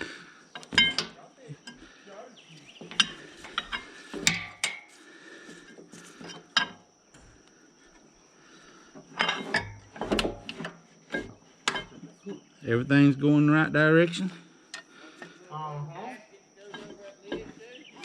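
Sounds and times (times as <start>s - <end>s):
metal tools clanking: 0.5s - 1.9s, 2.6s - 4.9s, 5.6s - 6.9s, 9.1s - 12.2s, 16.6s - 18.0s.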